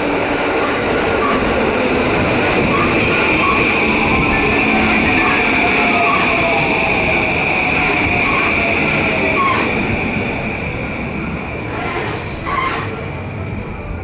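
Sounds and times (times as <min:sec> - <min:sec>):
train wheels squealing: 0:00.4 - 0:14.0.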